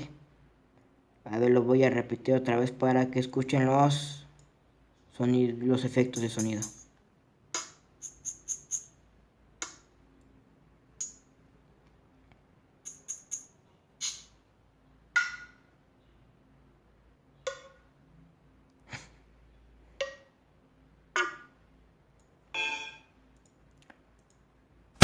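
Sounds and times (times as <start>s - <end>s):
rattle shakes: 8.0s - 8.9s, 12.8s - 13.5s.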